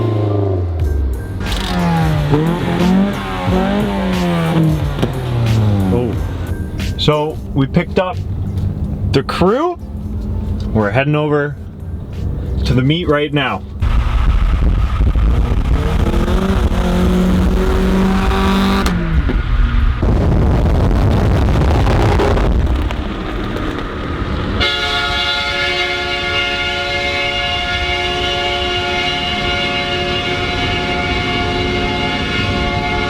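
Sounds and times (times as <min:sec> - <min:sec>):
car engines and exhausts: 0:00.0 - 0:33.0
train-style air horn chord: 0:01.5 - 0:06.6, 0:24.6 - 0:33.0.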